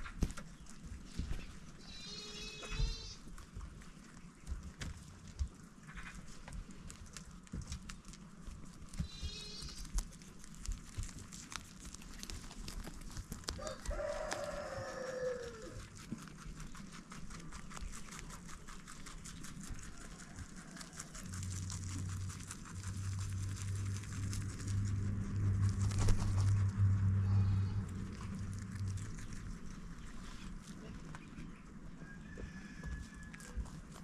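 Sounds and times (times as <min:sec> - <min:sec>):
low steady hum: 0:00.0 - 0:34.0
rooster crowing: 0:13.5 - 0:15.9, 0:19.8 - 0:21.3, 0:31.9 - 0:33.8.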